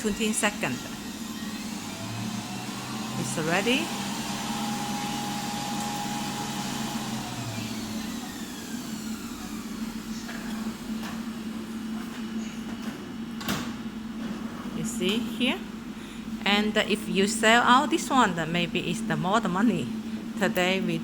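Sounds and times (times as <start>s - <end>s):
motor and fan hum: 0.0s - 21.0s
higher motor tone winding down: 0.8s - 10.1s.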